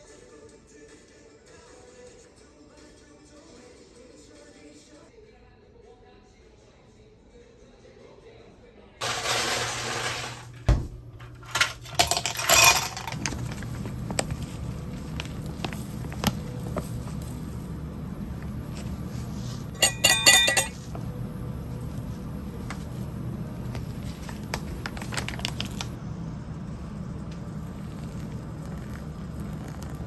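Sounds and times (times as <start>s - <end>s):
steady low hum: 10.3s - 30.0s
clinking bursts: 11.4s - 13.6s, 19.7s - 20.8s.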